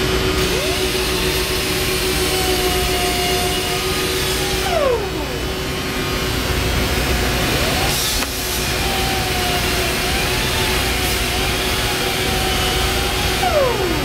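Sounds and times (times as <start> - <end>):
laser cutting machine hum and hiss: 0.0 - 14.0
machine whine: 0.0 - 14.0.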